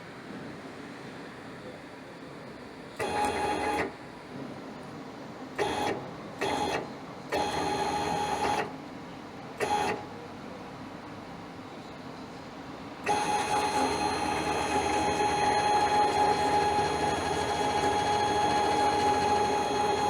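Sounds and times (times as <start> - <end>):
servo motor whine: 13.1 - 20.0.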